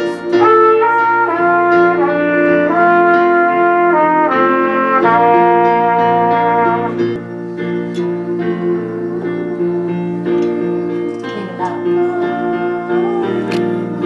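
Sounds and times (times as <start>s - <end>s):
held instrumental chords: 0.0s - 14.0s.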